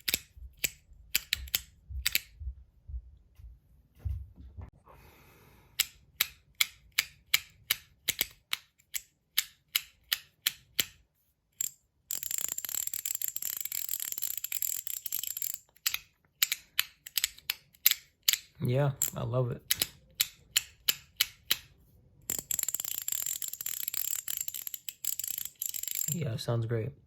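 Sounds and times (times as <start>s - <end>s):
fidget coin clicking: 11.6s - 21.6s, 22.3s - 26.3s.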